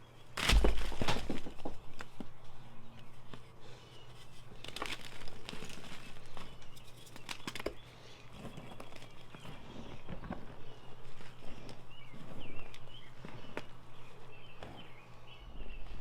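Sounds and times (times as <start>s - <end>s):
chalk crushed by hand: 0.3s - 2.2s, 4.2s - 10.0s.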